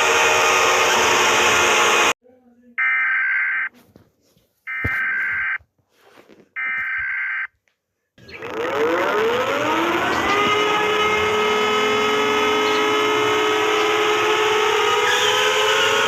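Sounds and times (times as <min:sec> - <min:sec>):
loud alarm tone chord: 0:08.6 - 0:16.0.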